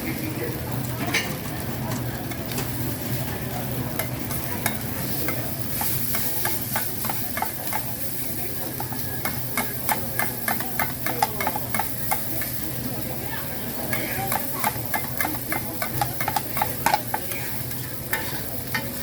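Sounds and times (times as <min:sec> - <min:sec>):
rice sizzling in pan: 0:00.0 - 0:19.0
metal spatula clanking on pan: 0:03.9 - 0:08.1, 0:08.7 - 0:12.8, 0:13.8 - 0:19.0.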